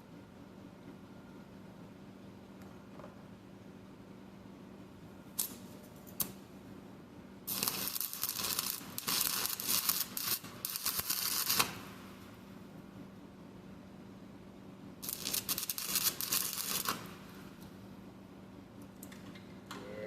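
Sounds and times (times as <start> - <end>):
welding arc crackling: 5.3 - 6.4, 7.4 - 12.5, 15.0 - 17.8.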